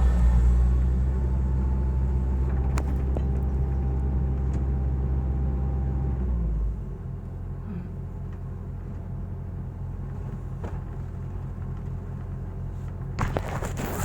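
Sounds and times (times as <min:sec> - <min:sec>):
excavator diesel engine running: 0:00.0 - 0:07.6.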